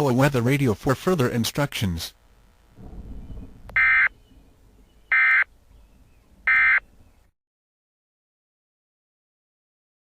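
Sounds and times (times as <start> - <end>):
faint low rumble: 2.0 - 7.3
buzzy digital squawks: 3.2 - 4.2.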